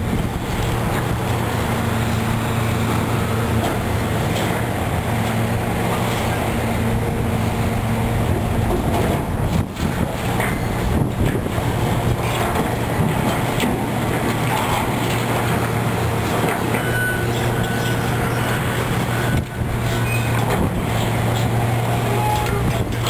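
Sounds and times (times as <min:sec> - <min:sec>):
demolition machine engine: 0:00.0 - 0:23.0
metallic squeals: 0:16.7 - 0:23.0.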